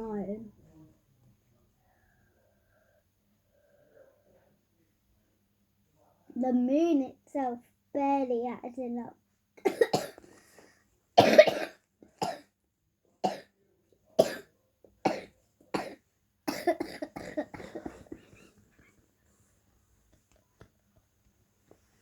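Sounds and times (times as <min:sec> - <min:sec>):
girl coughing: 0:09.6 - 0:10.2, 0:11.2 - 0:12.5, 0:14.2 - 0:14.4, 0:15.1 - 0:18.5.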